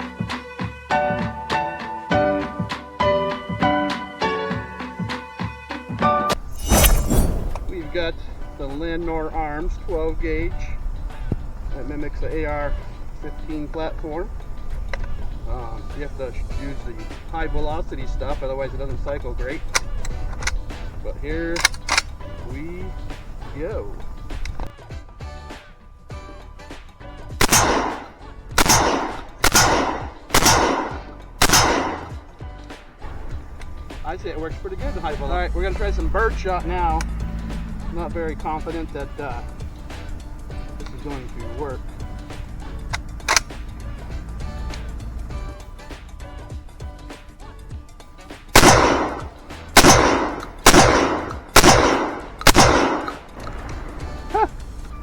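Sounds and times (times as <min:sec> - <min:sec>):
shotgun blasts: 0:06.3 - 0:09.2, 0:27.4 - 0:32.3, 0:48.5 - 0:53.9.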